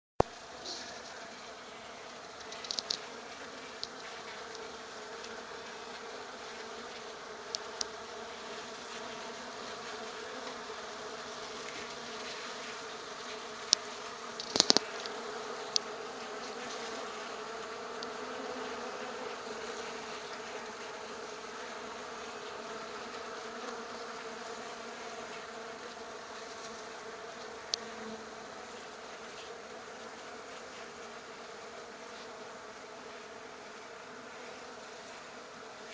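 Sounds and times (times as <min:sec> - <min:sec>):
bees buzzing: 0:00.3 - 0:35.9
sharp clicks: 0:14.4 - 0:15.1.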